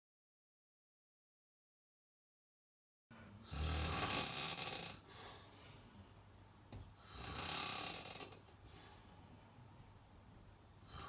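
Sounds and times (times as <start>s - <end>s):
snoring: 3.4s - 5.1s, 7.0s - 8.5s.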